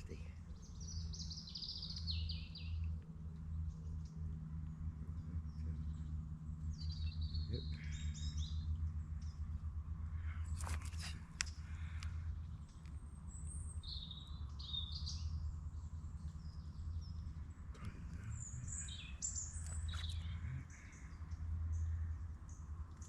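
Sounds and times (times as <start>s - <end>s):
small birds chirping: 0.0s - 23.0s
steady low rumble: 0.0s - 23.0s.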